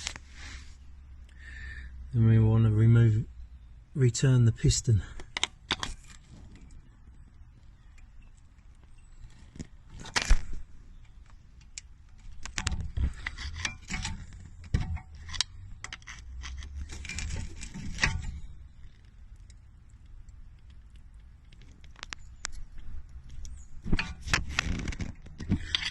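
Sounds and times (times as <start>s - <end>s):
metal tools clicking and scraping: 12.4s - 18.7s, 23.4s - 25.9s.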